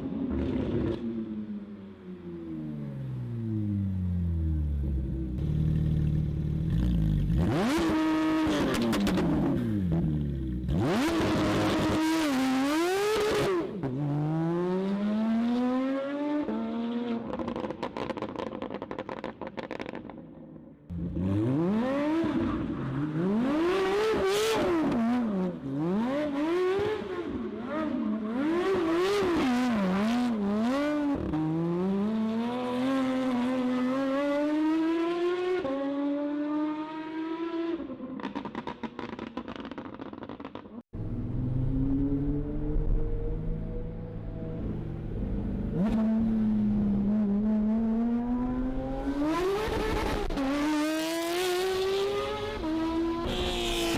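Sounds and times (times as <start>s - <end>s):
car engine accelerating: 41.0s - 53.9s.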